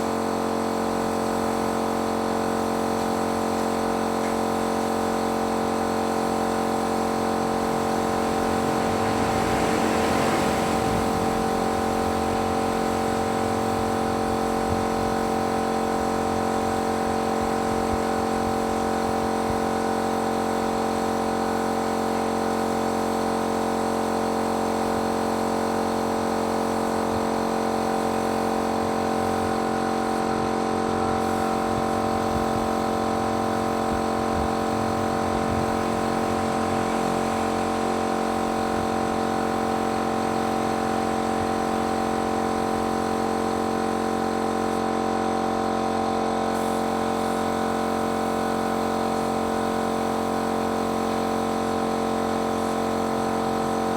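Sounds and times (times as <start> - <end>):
paint sprayer motor humming: 0.1 - 22.7, 26.4 - 53.9
spray hiss: 2.5 - 19.2, 31.2 - 44.0, 46.5 - 50.9.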